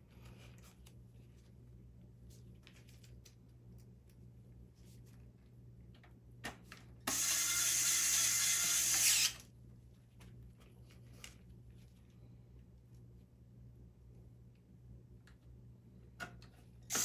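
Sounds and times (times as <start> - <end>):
power screwdriver running: 7.1 - 9.4.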